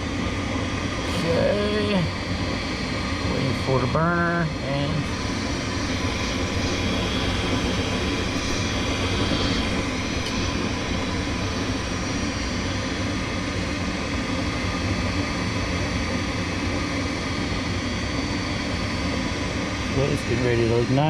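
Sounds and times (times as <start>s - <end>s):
furnace motor humming: 0.0s - 17.8s.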